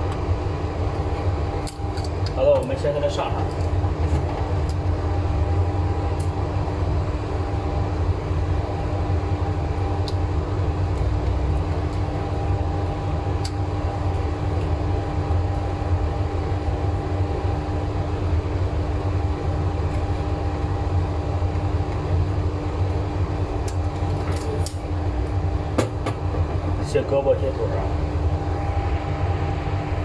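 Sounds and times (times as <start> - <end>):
hard disk drive humming: 27.9 - 30.0.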